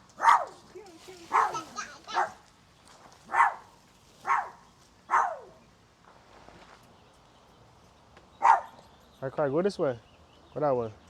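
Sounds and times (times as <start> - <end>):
dog barking: 0.2 - 0.6, 1.3 - 2.4, 3.3 - 5.6, 8.4 - 8.8.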